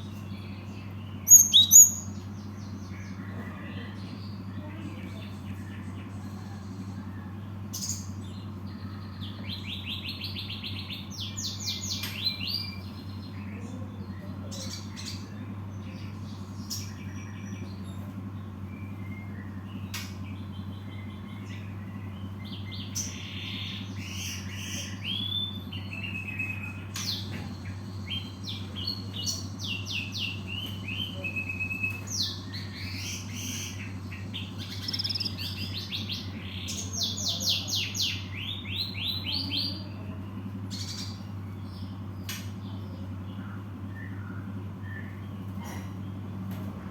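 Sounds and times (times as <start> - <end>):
steady low hum: 0.0 - 46.9
bird chirping: 0.1 - 3.0, 18.7 - 39.6.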